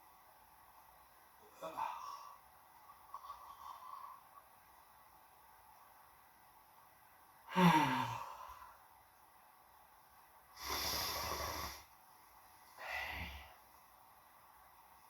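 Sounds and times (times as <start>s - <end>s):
noisy breathing: 1.6s - 4.5s, 10.5s - 12.0s, 12.6s - 13.8s
person snoring: 7.5s - 8.7s, 10.6s - 11.9s, 12.8s - 13.6s.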